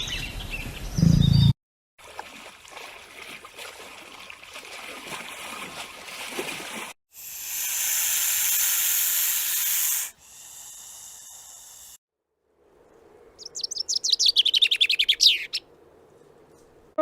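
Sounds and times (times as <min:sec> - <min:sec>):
loud hiss: 0:07.2 - 0:12.0.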